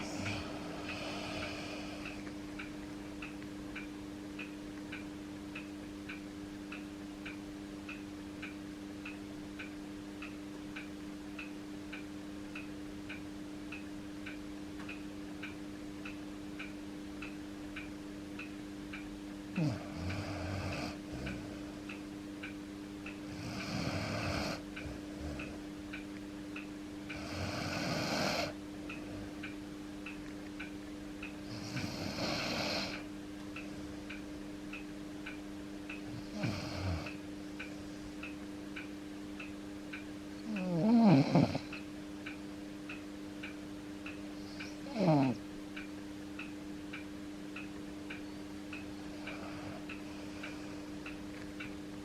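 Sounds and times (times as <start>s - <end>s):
dog snoring: 0.0s - 2.1s, 19.6s - 21.6s, 23.3s - 25.6s, 27.1s - 28.6s, 31.5s - 33.0s, 36.1s - 37.2s, 40.4s - 41.7s, 44.4s - 45.4s
regular ticking: 0.0s - 52.0s
steady low hum: 0.0s - 52.0s.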